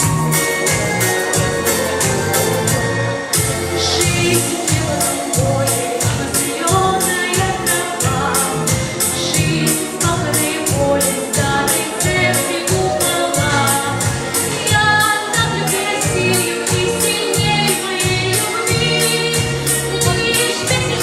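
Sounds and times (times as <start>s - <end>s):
music with quick beat: 0.0s - 2.8s.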